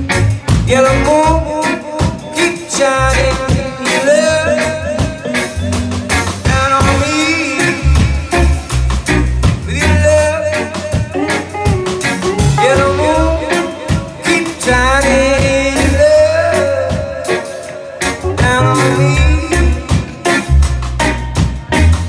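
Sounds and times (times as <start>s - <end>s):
deep bass line: 0.0s - 1.6s, 2.9s - 3.5s, 5.6s - 13.6s, 14.7s - 16.8s, 18.1s - 22.0s
electric guitar lead: 0.0s - 22.0s.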